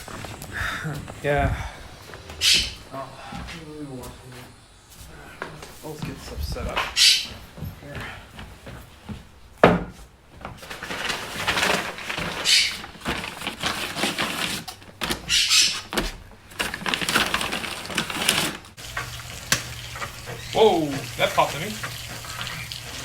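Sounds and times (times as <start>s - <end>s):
kitchen knocks and clicks: 9.1s - 10.0s.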